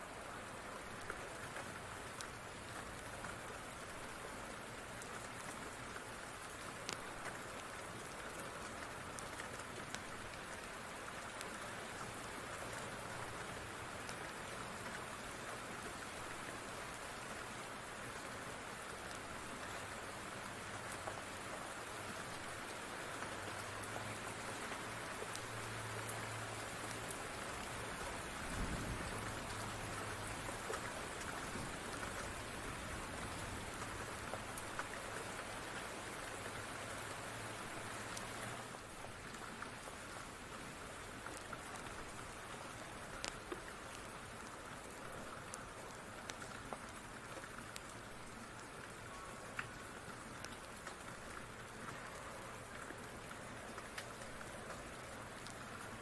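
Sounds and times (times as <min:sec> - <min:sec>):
steady rain: 0:00.0 - 0:56.0
wood fire crackling: 0:06.8 - 0:08.0.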